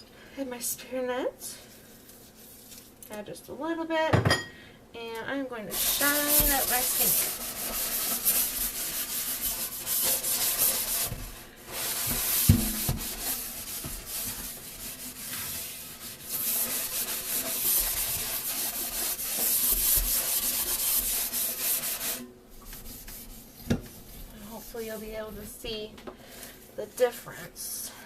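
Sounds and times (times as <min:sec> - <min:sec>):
cloth scrubbing sink: 0:05.6 - 0:25.8.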